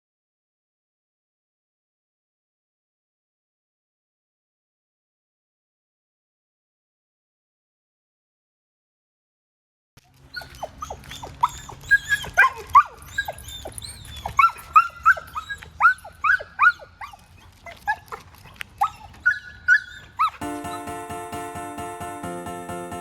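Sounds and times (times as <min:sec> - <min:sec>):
dog whining and yelping: 0:10.1 - 0:20.8.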